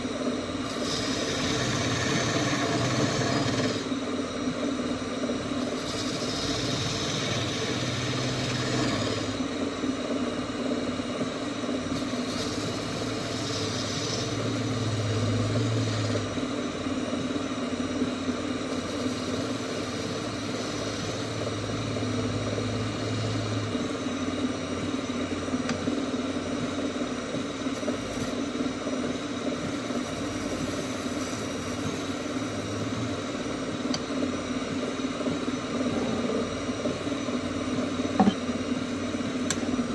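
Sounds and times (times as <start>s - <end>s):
wood lathe motor hum: 0.6s - 4.1s, 5.4s - 10.2s, 11.8s - 17.4s, 18.6s - 24.2s, 27.8s - 28.4s.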